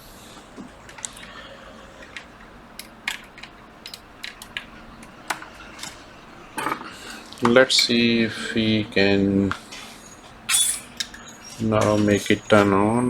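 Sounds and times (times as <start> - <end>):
tools and parts clicking: 2.0 - 7.6, 10.0 - 12.7.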